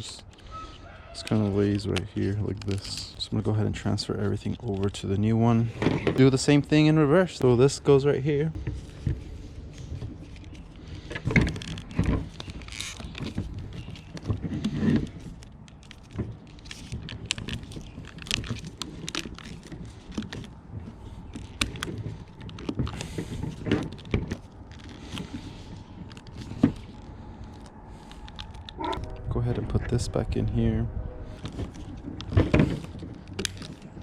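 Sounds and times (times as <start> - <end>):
plastic parts clicking and knocking: 8.6 - 28.9.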